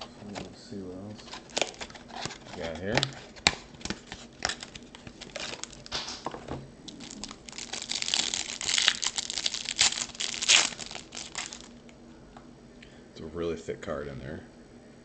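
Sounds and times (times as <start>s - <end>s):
plastic wrapper crinkling: 1.2s - 6.3s, 6.9s - 11.9s.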